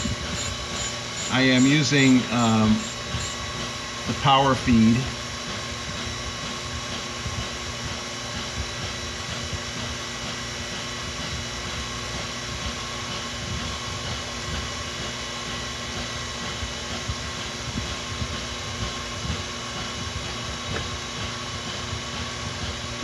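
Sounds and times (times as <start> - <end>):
surface grinder grinding steel: 0.0 - 3.8.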